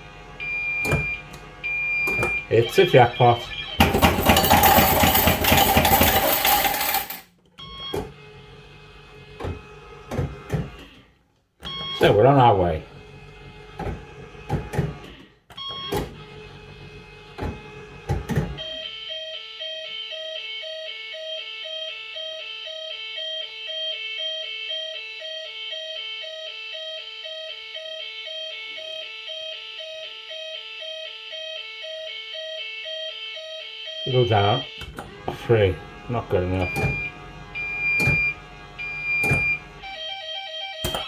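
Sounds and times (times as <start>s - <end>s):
mechanical clicks and clunks: 0.7s - 2.5s, 34.7s - 39.9s, 40.8s - 41.0s
electronic bleeping tune: 36.6s - 41.0s.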